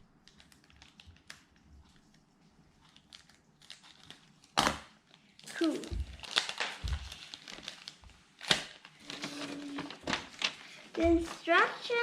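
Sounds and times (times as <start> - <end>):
paper and plastic rustling: 2.7 - 12.0.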